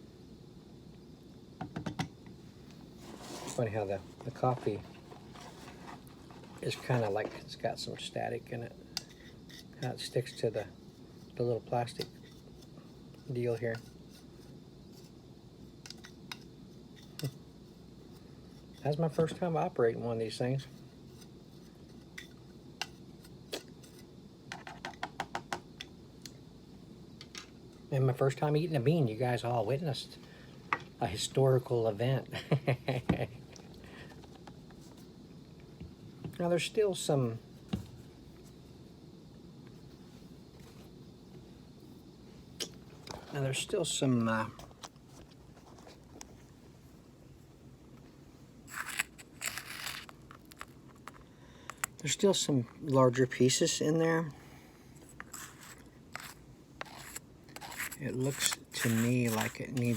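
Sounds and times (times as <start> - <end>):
coffee bean crunching: 48.7 - 52.0, 55.2 - 59.9
crunchy rustling and clicking: 48.7 - 53.0.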